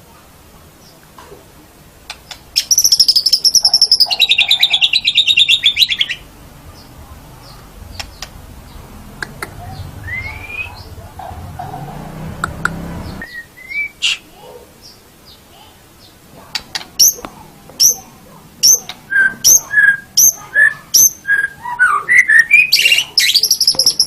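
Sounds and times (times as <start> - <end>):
bird singing rapid trill: 2.2 - 11.0, 12.6 - 14.2, 17.8 - 24.0
sharp clicks: 7.9 - 8.4.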